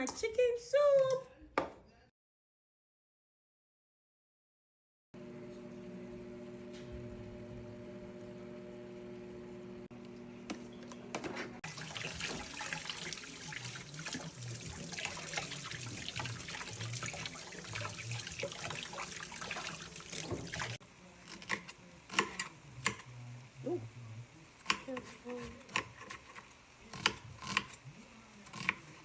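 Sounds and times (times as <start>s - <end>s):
tap running into sink: 10.5s - 20.8s.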